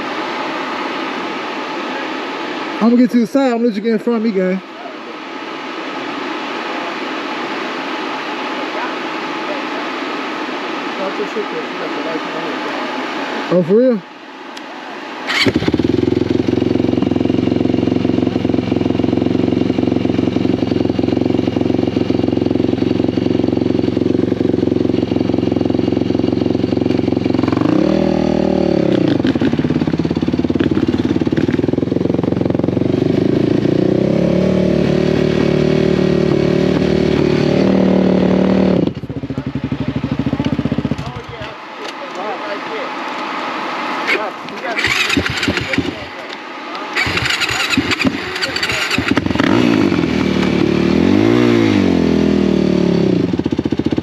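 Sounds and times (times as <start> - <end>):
atv engine running: 15.1 - 54.0.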